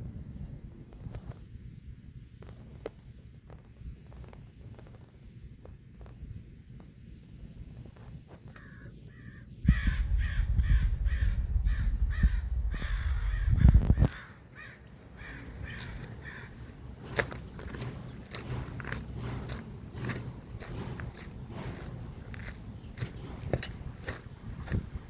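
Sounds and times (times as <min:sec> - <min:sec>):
bird harsh caw-like calls: 0:08.5 - 0:21.3
loud low rumble: 0:09.6 - 0:14.1.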